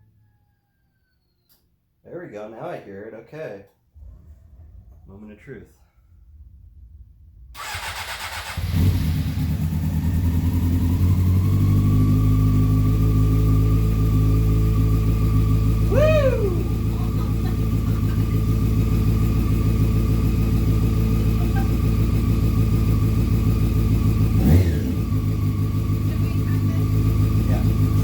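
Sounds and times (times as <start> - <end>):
motorcycle engine idling: 7.6 - 28.0.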